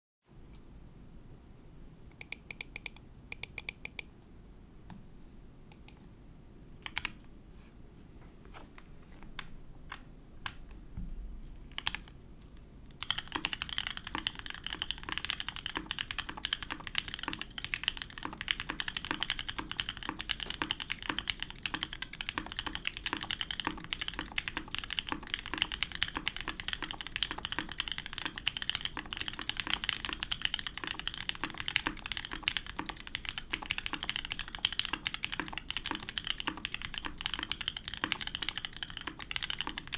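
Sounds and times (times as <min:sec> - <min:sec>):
mechanical keyboard typing: 0:02.2 - 0:04.1, 0:11.8 - 0:12.1, 0:13.0 - 0:39.9.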